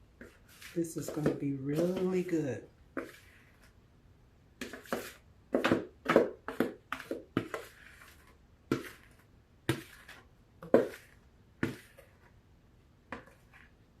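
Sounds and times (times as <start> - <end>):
spoon scraping a mixing bowl: 0.2 - 2.3, 2.9 - 3.8, 4.6 - 12.4.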